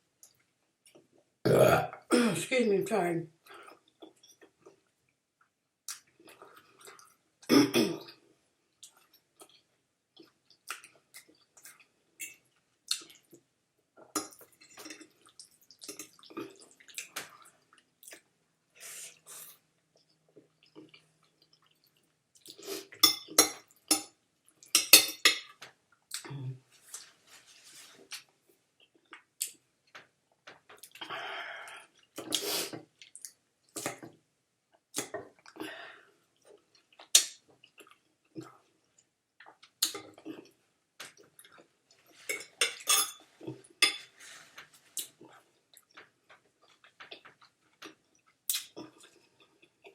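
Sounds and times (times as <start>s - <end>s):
cutlery clinking on plate: 43.8s - 44.1s.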